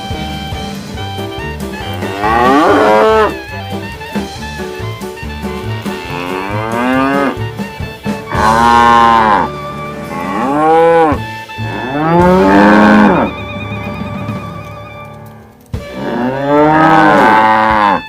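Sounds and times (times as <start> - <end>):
background music: 0.0 - 18.0
cows mooing: 1.8 - 3.4, 5.6 - 7.6, 8.2 - 14.1, 15.2 - 18.0.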